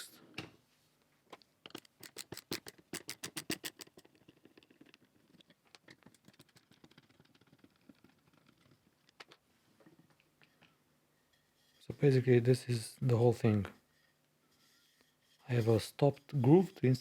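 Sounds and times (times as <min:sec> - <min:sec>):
faint scraping and rubbing: 0:03.7 - 0:17.0.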